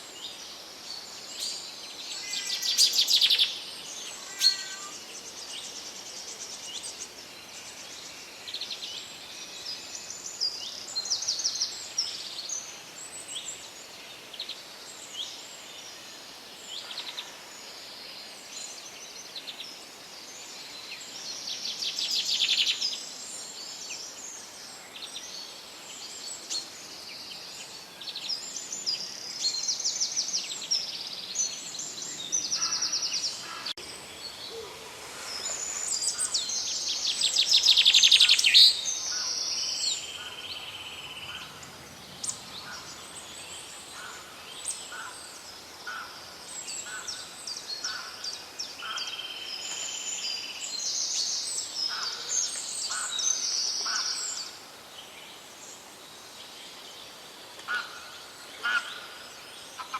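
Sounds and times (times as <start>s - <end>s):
faint forest hiss: 0.0s - 59.9s
birds chirping and trilling: 0.9s - 7.8s, 27.4s - 54.6s.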